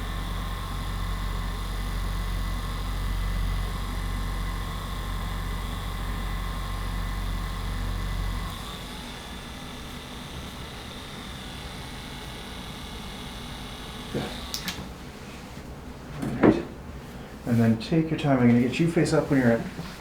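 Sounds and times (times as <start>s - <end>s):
small electric motor humming: 0.0s - 14.8s.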